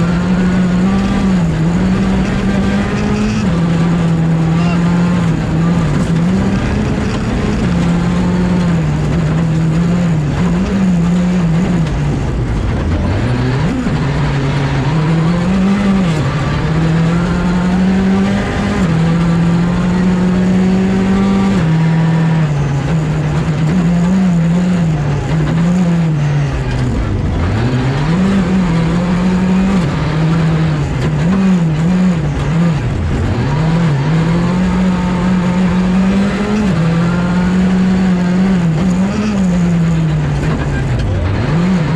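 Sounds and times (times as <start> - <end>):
rally car engine revving: 0.0 - 41.9.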